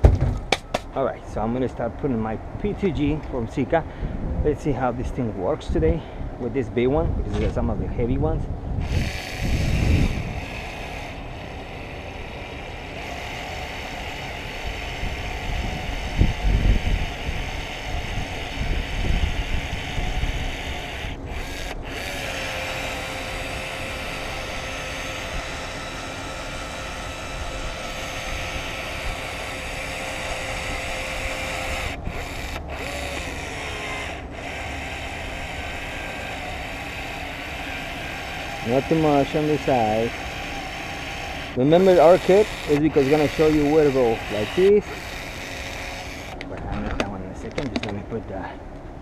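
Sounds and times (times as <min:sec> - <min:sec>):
low knocks: 0:00.0 - 0:01.0
cordless applicator gun motor: 0:08.8 - 0:47.0.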